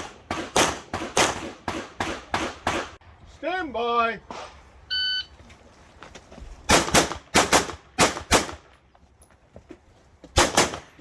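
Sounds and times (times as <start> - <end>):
pistol shots: 0.0 - 3.0, 6.7 - 8.6, 10.4 - 10.9.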